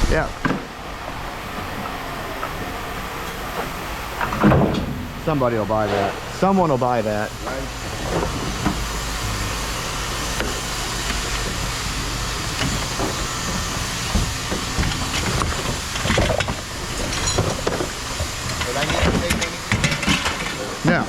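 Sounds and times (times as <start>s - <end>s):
constant hiss: 0.0s - 21.0s
vehicle engine idling: 8.6s - 12.2s.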